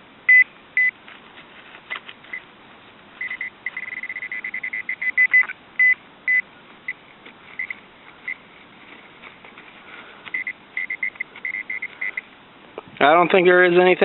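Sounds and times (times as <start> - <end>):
metal detector probe beeping: 0.3 - 1.0, 3.2 - 8.4, 10.3 - 12.3.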